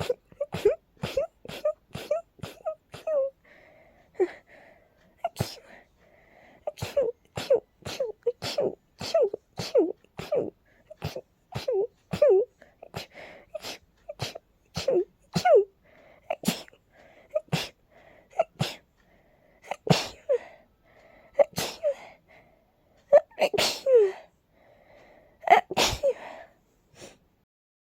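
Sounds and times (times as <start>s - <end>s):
soft voiced breaths: 0.0s - 14.8s, 15.6s - 23.2s, 23.9s - 25.4s
person sneezing: 6.7s - 15.6s, 16.3s - 17.8s, 19.7s - 20.5s, 21.4s - 22.0s, 23.2s - 24.2s, 25.5s - 26.4s.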